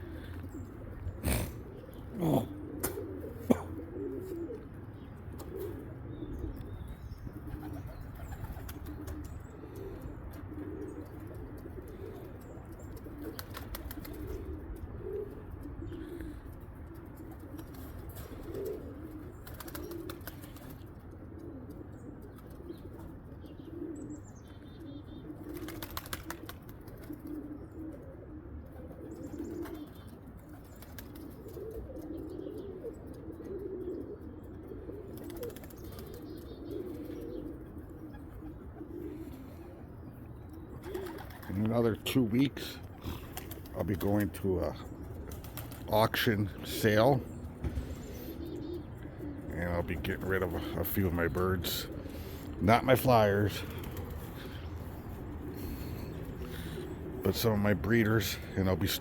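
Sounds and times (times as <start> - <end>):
pigeons cooing: 0.0 - 59.0
wings fluttering: 7.4 - 15.8, 16.9 - 21.1, 25.4 - 27.5, 28.8 - 32.2, 34.9 - 39.4, 40.6 - 41.7, 42.8 - 44.3, 44.9 - 46.0, 51.4 - 57.3.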